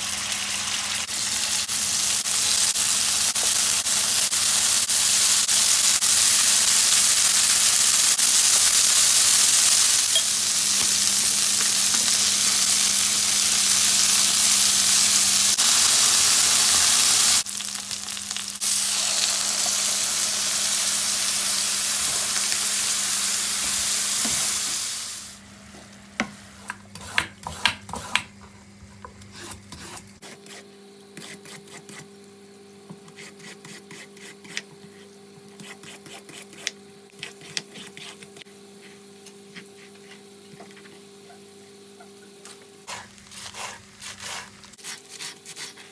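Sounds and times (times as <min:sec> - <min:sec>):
food sizzling in oil: 0:00.0 - 0:25.5.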